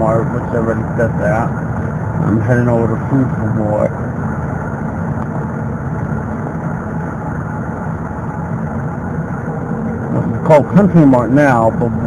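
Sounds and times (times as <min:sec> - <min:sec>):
car engine drone: 0:00.0 - 0:12.0
road noise inside car: 0:00.0 - 0:12.0.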